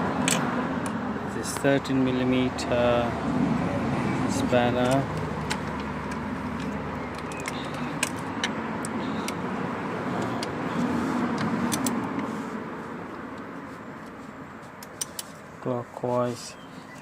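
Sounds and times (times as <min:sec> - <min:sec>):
spanner metallic clicks: 0:04.8 - 0:09.4.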